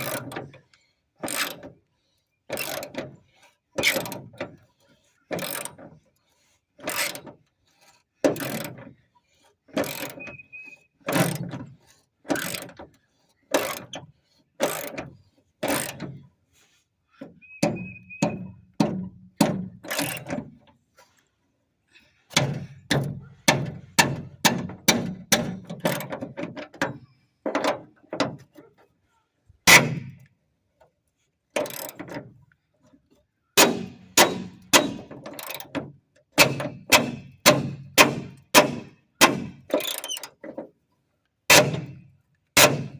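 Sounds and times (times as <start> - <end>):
ratchet wrench strokes: 1.2 - 1.7, 2.5 - 3.0, 3.8 - 4.2, 5.3 - 5.8, 6.8 - 8.8, 9.8 - 10.3, 12.2 - 12.8, 13.5 - 14.0, 14.6 - 16.1, 19.9 - 20.3, 31.6 - 32.0, 34.2 - 35.7, 39.7 - 40.3
short high squeaks: 9.9 - 11.4, 17.3 - 18.7, 19.9 - 20.3, 39.8 - 40.4.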